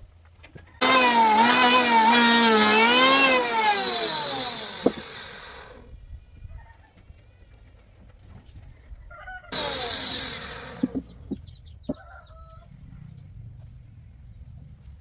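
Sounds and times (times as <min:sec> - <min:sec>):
power tool motor running: 0:00.8 - 0:05.9, 0:09.5 - 0:11.4.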